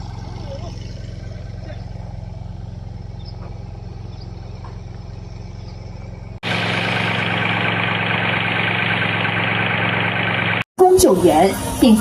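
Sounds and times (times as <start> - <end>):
engine humming low: 0.0 - 12.0
loud harsh machine noise: 6.4 - 12.0.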